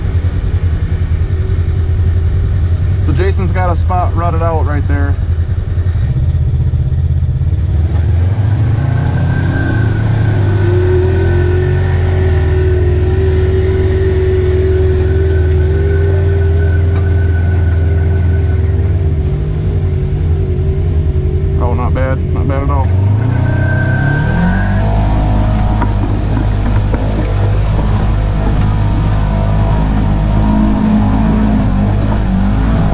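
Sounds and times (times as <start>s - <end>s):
engine revving under load: 0.0s - 32.9s
thin whine: 8.7s - 32.9s.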